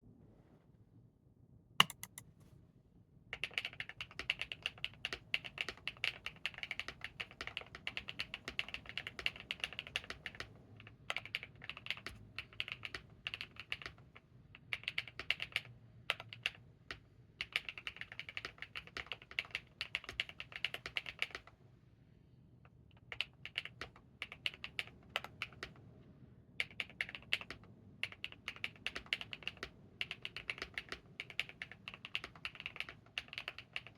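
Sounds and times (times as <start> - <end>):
fast mechanical keyboard typing: 1.8 - 2.2, 3.4 - 21.5, 23.0 - 25.8, 26.6 - 33.9
single sharp click: 1.8 - 2.2.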